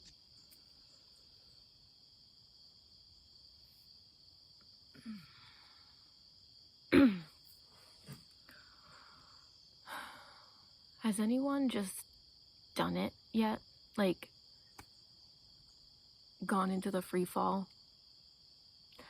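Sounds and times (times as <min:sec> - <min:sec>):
insects chirring: 0:00.0 - 0:19.0
person sighing: 0:04.9 - 0:05.9.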